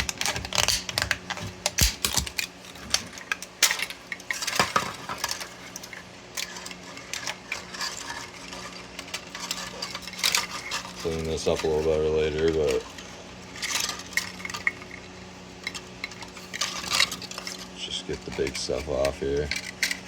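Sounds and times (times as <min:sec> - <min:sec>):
plastic snapping and cracking: 0:00.0 - 0:05.9
small plastic pieces clattering: 0:00.0 - 0:15.0, 0:15.6 - 0:20.0.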